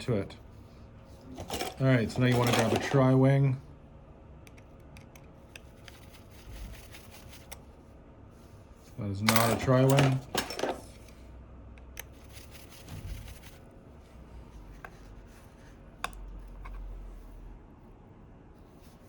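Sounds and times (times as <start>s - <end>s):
soft rubbing and rustling: 5.6s - 9.1s, 12.1s - 15.9s, 18.5s - 19.0s.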